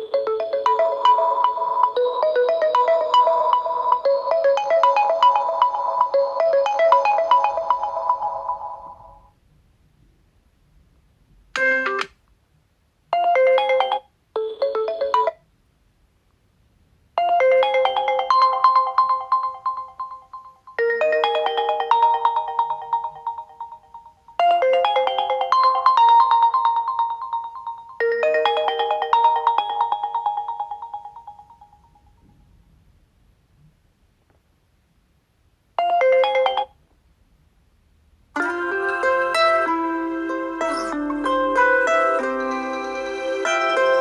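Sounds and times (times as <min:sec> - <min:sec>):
short melodic phone chimes: 0:00.0 - 0:09.2
phone ringtone melody: 0:00.0 - 0:09.3, 0:11.6 - 0:12.1, 0:13.2 - 0:15.4, 0:17.2 - 0:32.2, 0:35.8 - 0:36.7, 0:38.4 - 0:44.0.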